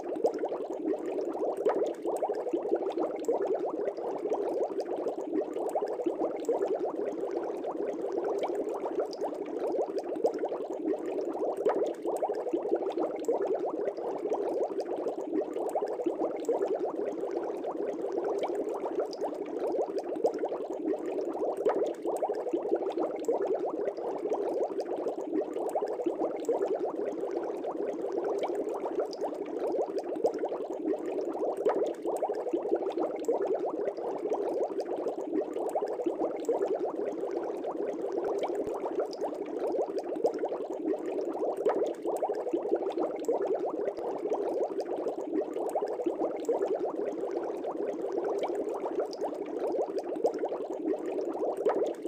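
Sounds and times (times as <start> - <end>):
air bubbling in fish tank: 0.0 - 52.0.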